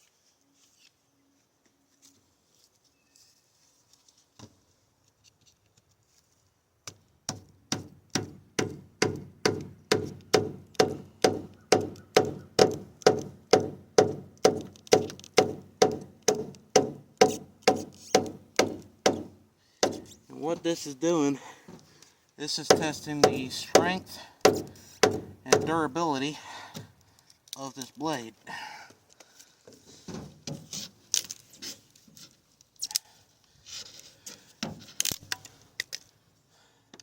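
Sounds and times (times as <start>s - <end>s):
baton striking knife: 8.6s - 20.1s.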